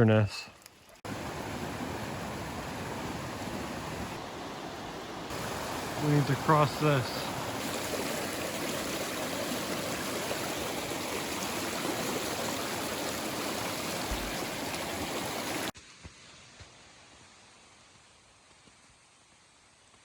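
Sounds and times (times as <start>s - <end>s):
mountain stream rushing: 1.0s - 15.8s.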